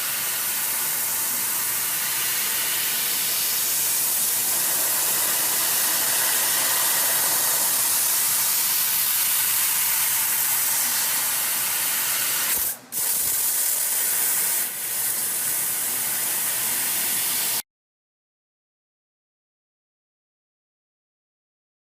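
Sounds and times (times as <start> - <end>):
gas hissing through nozzle: 0.0 - 17.6.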